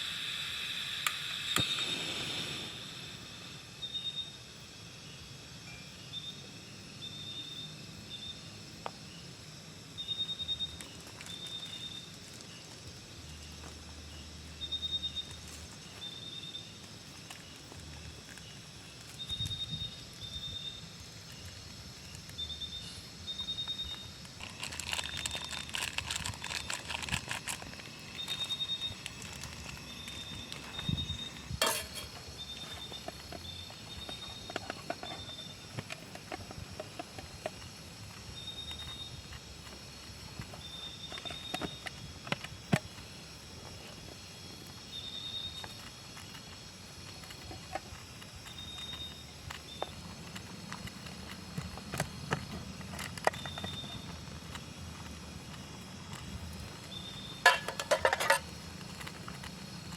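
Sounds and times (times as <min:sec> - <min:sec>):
animal high pulsed chirps: 0:00.0 - 0:04.4
steady hiss: 0:00.0 - 0:59.9
crackling rustle: 0:09.8 - 0:59.9.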